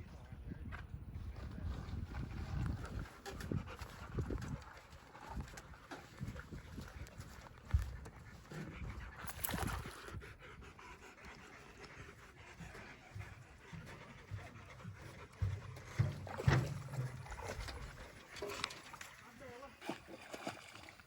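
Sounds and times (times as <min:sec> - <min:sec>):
dog panting: 0:06.5 - 0:18.1.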